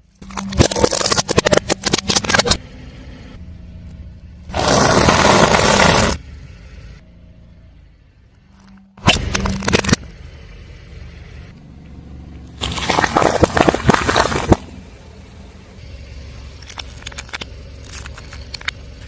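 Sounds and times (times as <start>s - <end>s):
car engine running low: 0.0s - 19.0s
tyre crushing brittle objects: 0.1s - 2.6s, 4.5s - 6.2s, 9.0s - 10.0s, 12.6s - 14.7s.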